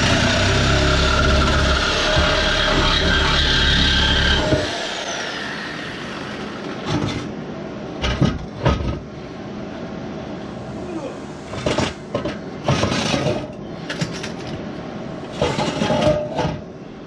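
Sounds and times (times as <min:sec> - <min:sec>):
motor whine winding down: 0:00.0 - 0:06.8.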